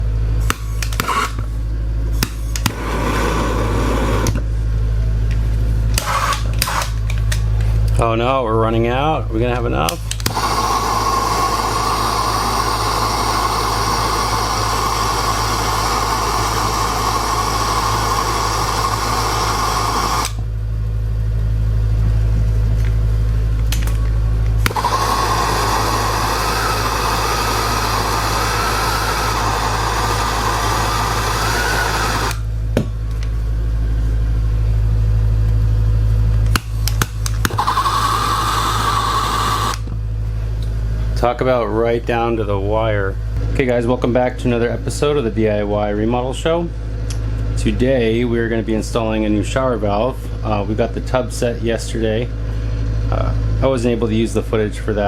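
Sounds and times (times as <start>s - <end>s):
low hum: 0.0s - 54.5s
gas torch flame hissing: 0.4s - 1.5s, 2.2s - 4.5s, 5.9s - 7.3s, 9.8s - 20.5s, 24.6s - 32.5s, 36.5s - 40.0s.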